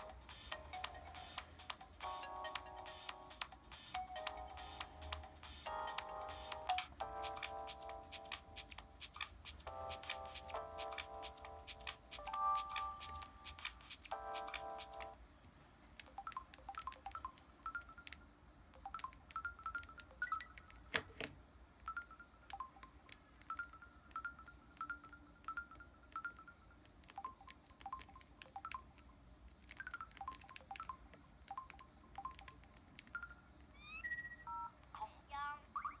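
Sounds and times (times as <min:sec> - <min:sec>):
phone key beeps: 0:16.0 - 0:18.2, 0:18.8 - 0:29.0, 0:29.8 - 0:35.1
phone button clicks: 0:20.6 - 0:21.4.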